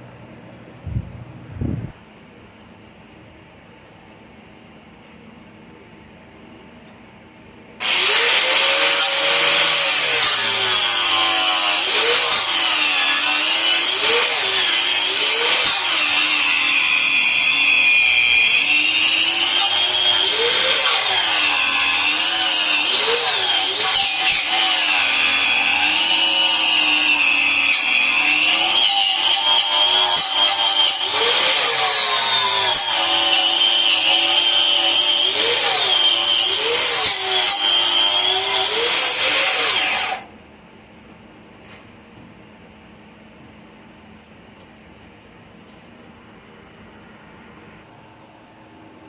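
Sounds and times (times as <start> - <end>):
electric grinder motor: 7.8 - 40.3.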